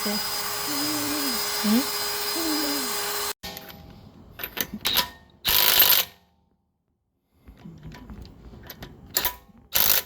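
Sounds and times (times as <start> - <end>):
power tool burst: 0.0 - 3.4.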